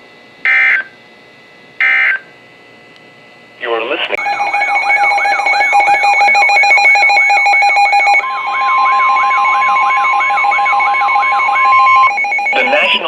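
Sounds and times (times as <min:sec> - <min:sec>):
steady warning alarm tone: 0:00.2 - 0:02.5, 0:04.1 - 0:13.0
pulsing alert beeps: 0:04.2 - 0:13.0
whooping electronic sweep: 0:04.2 - 0:13.0.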